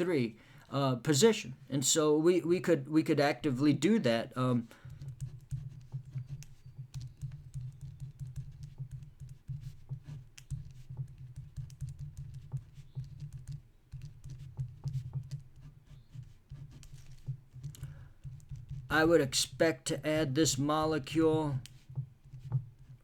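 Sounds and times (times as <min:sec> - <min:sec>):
light taps and clicks: 0:04.8 - 0:15.6, 0:16.2 - 0:19.6.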